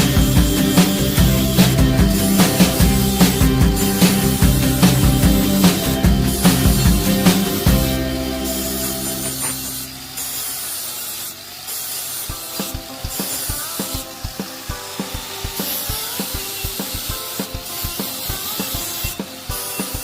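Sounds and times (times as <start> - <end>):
background music: 0.0 - 10.4, 12.3 - 20.0
hand tool strokes on propeller: 9.4 - 20.0.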